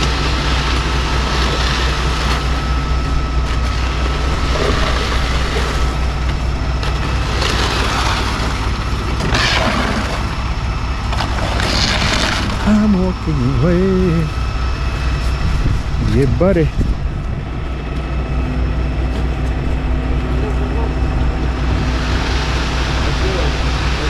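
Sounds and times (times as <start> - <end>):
truck engine humming: 0.0 - 24.0.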